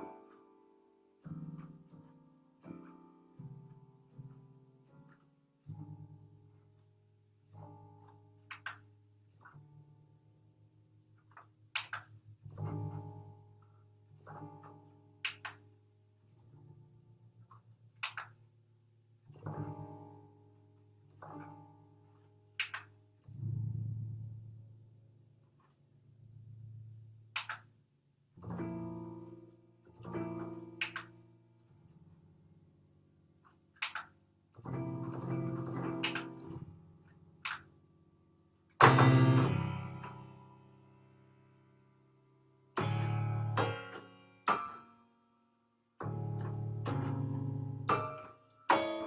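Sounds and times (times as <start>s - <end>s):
plucked guitar notes and chords: 38.8s - 40.5s.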